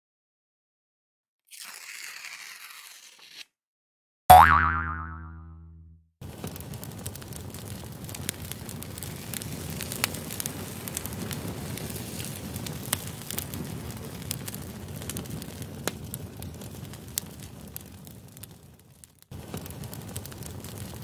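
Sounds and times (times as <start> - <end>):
fire crackling and popping: 6.2 - 21.0.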